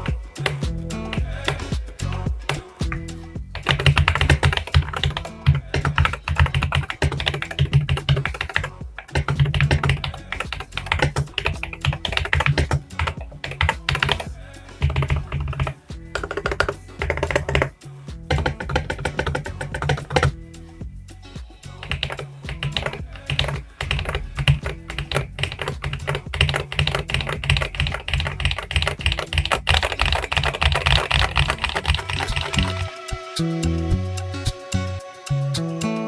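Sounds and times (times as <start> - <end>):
mechanical keyboard typing: 3.6 - 17.7, 18.3 - 20.4, 21.8 - 32.9.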